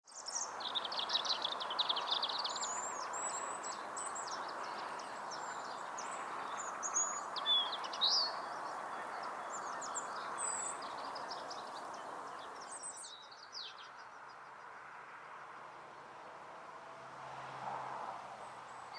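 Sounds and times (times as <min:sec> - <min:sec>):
small birds chirping: 0:00.1 - 0:14.2.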